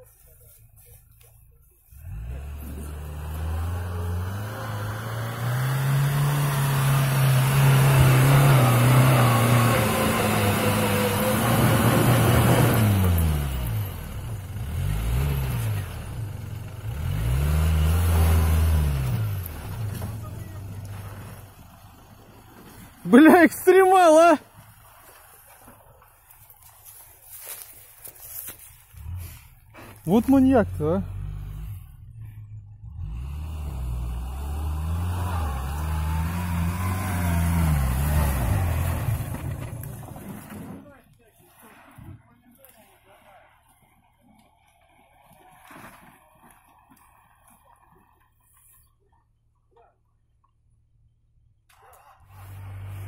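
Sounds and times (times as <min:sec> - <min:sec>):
car engine revving: 0:01.9 - 0:23.2, 0:28.9 - 0:40.5.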